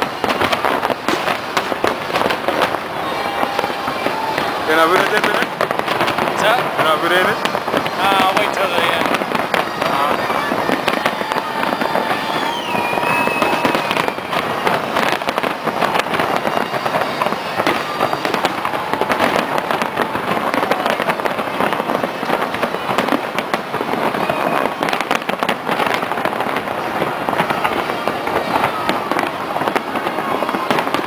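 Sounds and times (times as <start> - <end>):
fireworks bursting and crackling: 0.0 - 31.0
thin falling whistle: 12.1 - 14.4.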